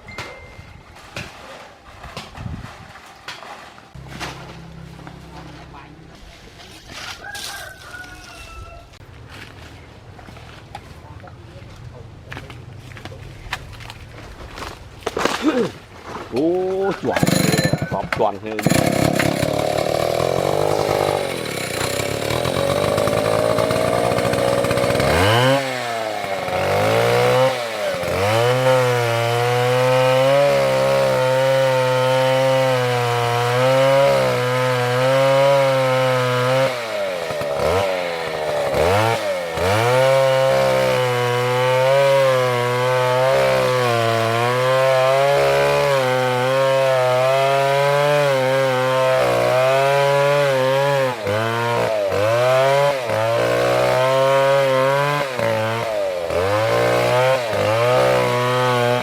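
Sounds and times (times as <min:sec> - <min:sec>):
chainsaw cutting wood: 0:01.0 - 0:08.1, 0:16.8 - 0:59.0.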